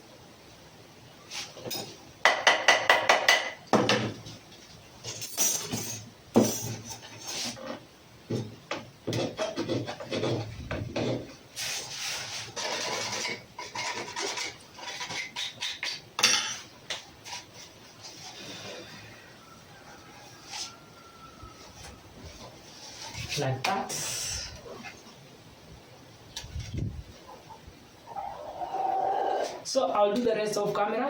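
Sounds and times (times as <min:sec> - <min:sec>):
knocks on parts: 0:02.3 - 0:04.2
rasping scraping strokes: 0:09.2 - 0:16.0.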